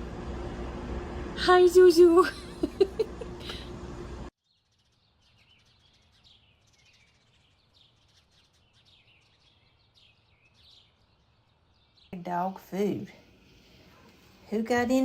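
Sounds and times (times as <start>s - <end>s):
low background hum: 0.0s - 4.3s, 6.0s - 15.0s
small birds chirping: 4.4s - 15.0s.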